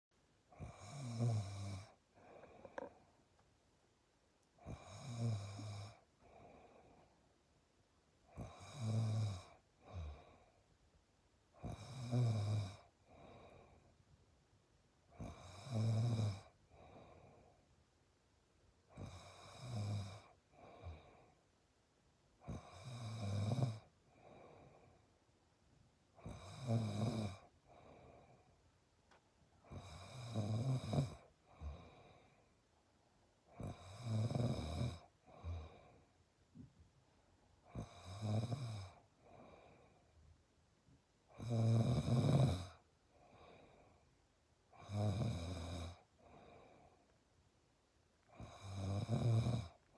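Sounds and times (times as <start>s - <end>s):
person snoring: 0.5s - 3.0s, 4.6s - 7.0s, 8.3s - 10.5s, 11.6s - 13.8s, 15.1s - 17.5s, 18.9s - 21.3s, 22.4s - 24.9s, 26.2s - 28.4s, 29.6s - 32.3s, 33.5s - 36.0s, 37.6s - 39.9s, 41.3s - 43.9s, 44.8s - 46.9s, 48.3s - 49.8s.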